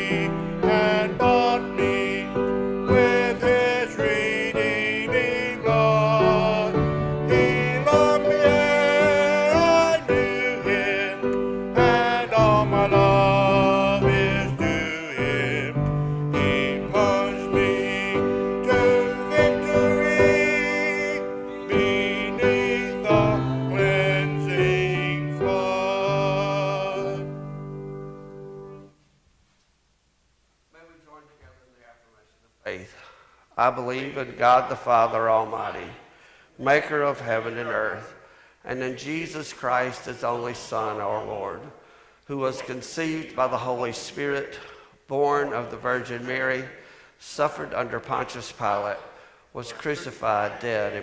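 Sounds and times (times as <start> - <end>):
hymn singing with vibrato: 0.0 - 28.8, 33.1 - 51.0
instrumental accompaniment: 0.0 - 29.0.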